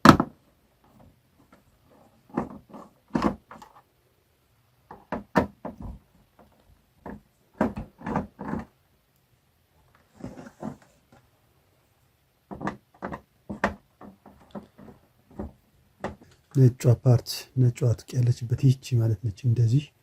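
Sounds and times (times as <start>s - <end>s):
tv parts knocking and clunking: 0.0s - 1.6s, 2.2s - 3.8s, 4.9s - 8.7s, 12.5s - 16.5s.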